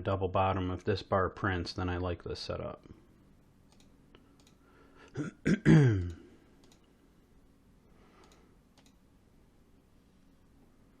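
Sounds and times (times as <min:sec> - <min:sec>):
faint clicks: 0:03.7 - 0:04.6, 0:06.0 - 0:07.0, 0:08.2 - 0:09.0
man clearing his throat: 0:05.1 - 0:06.3.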